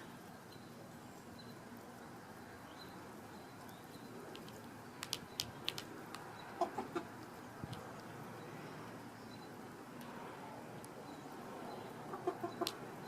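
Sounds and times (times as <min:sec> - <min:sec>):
sharp clicks: 0:04.3 - 0:06.3
hens clucking: 0:05.6 - 0:07.9, 0:11.8 - 0:13.0.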